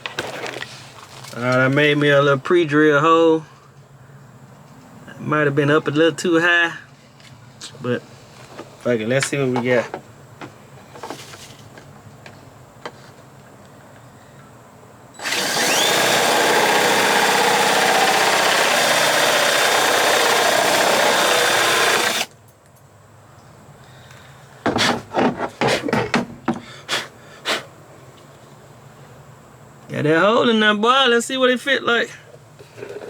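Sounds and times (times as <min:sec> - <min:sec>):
power drill whining: 0:15.2 - 0:22.3.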